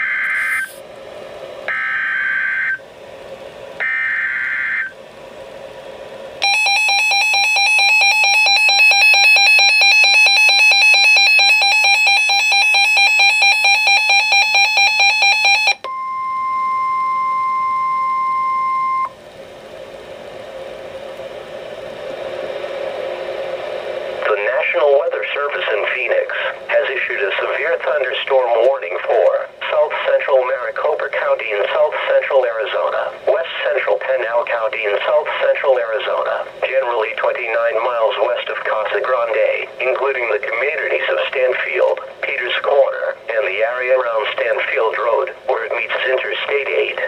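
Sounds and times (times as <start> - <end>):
rapidly pulsing alert beep: 0.0 - 0.8
steady warning alarm tone: 0.0 - 0.8, 1.7 - 2.9, 3.8 - 5.0, 6.4 - 19.2
buzzy digital data bursts: 0.2 - 0.8
radio hiss: 23.2 - 47.0.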